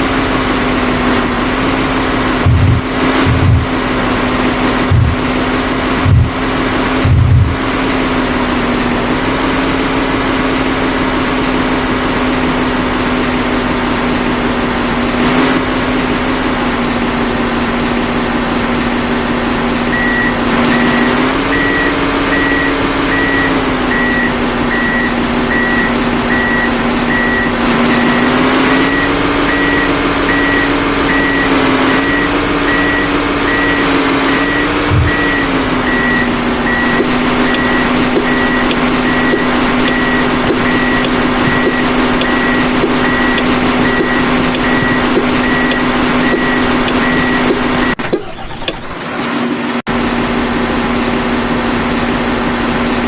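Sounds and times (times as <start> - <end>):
heavy diesel engine running: 0.0 - 53.0
reversing alarm beeping: 2.4 - 3.8, 4.4 - 7.6, 19.9 - 48.9.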